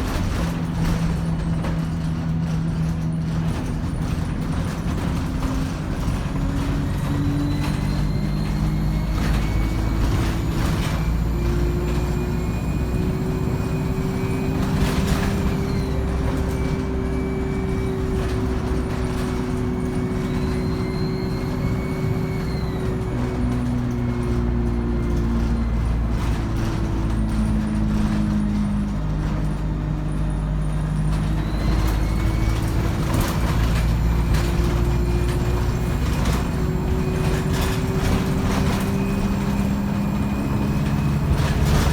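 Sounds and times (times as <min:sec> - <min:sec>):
bus diesel engine: 0:00.0 - 0:41.9
turbocharger whine: 0:05.5 - 0:41.9.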